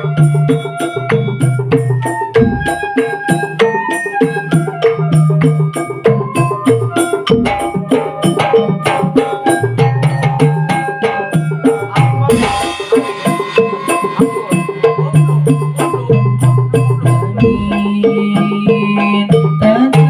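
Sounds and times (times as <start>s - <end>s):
low bass notes: 11.8s - 17.8s
cymbal splash: 12.3s - 16.1s.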